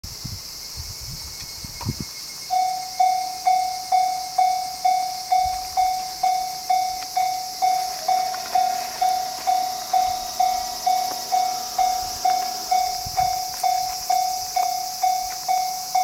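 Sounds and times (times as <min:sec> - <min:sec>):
level crossing alarm dinging: 0:02.5 - 0:16.0.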